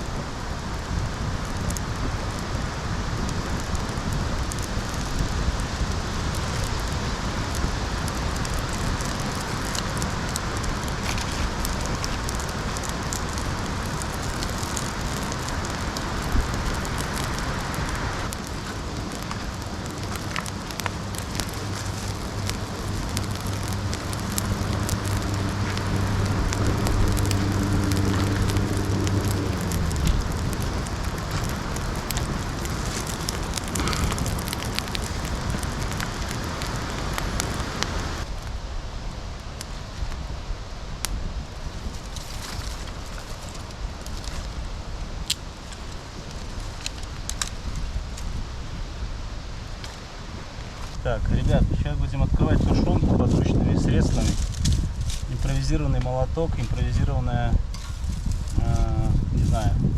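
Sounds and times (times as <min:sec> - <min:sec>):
wood fire crackling and popping: 0:00.0 - 0:59.9
low hum: 0:17.9 - 0:38.9.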